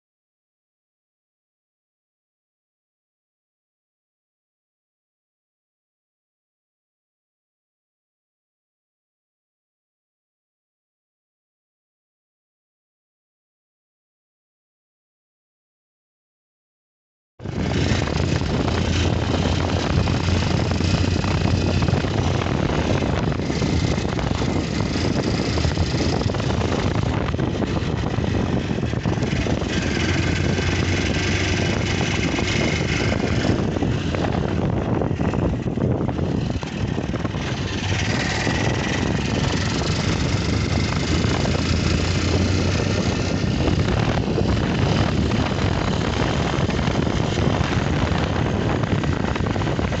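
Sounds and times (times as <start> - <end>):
motorcycle engine running: 17.4 - 50.0.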